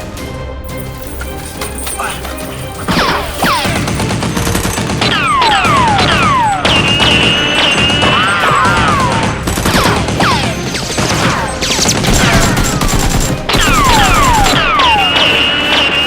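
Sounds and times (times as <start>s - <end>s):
background music: 0.0s - 16.0s
rapid automatic gunfire: 3.7s - 16.0s
falling whistles: 6.2s - 8.4s.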